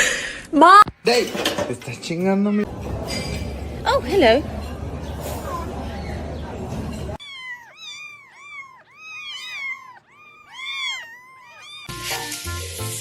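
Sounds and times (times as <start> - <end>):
cat meowing: 7.2 - 12.3.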